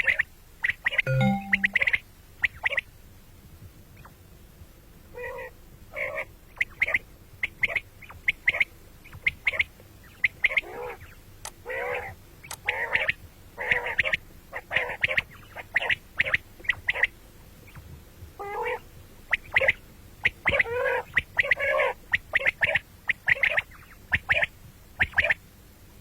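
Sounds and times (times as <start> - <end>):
quail calling: 11.7 - 17.1, 18.4 - 18.8, 19.4 - 25.4.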